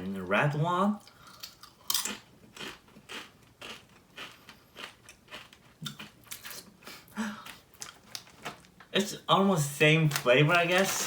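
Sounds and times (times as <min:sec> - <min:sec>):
crunching and chewing a crisp chip: 0:01.1 - 0:06.7.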